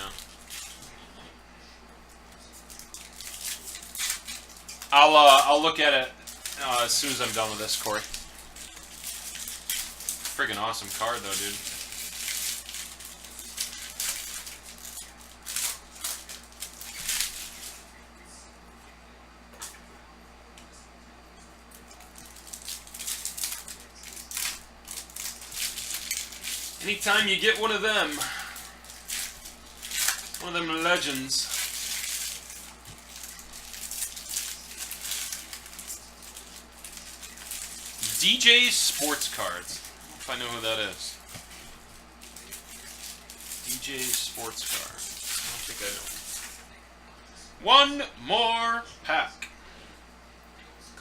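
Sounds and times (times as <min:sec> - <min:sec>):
trading cards rustling on table: 0:06.2 - 0:18.0, 0:21.8 - 0:46.7.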